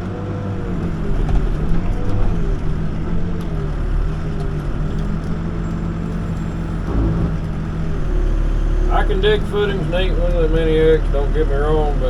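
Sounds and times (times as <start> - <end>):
backhoe diesel engine digging: 0.0 - 12.0
low thump: 6.8 - 8.1.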